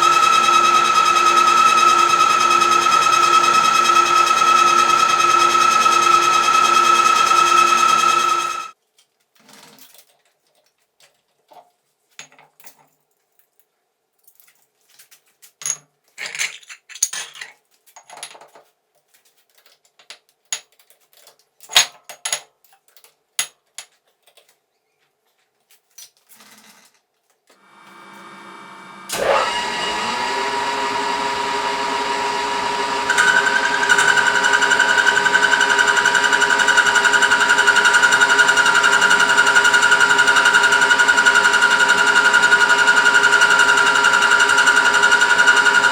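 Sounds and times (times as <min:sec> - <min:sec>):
metal lathe whining: 0:00.0 - 0:08.8, 0:27.7 - 0:45.9.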